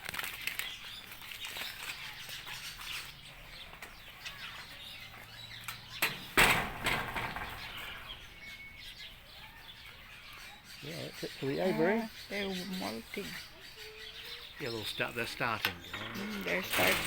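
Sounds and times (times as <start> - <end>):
loud rustle or clatter: 0.0 - 3.2, 6.0 - 8.2
birds chirping and twittering: 0.0 - 17.0.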